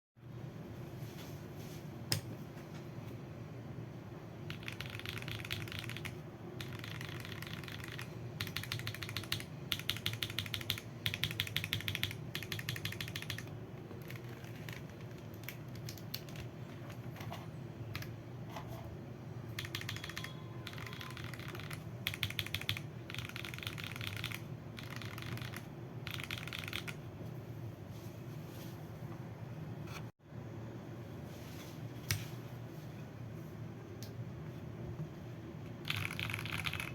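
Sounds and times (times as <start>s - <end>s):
mechanical keyboard typing: 4.5s - 17.1s, 17.9s - 18.2s, 19.5s - 27.0s, 35.8s - 36.9s.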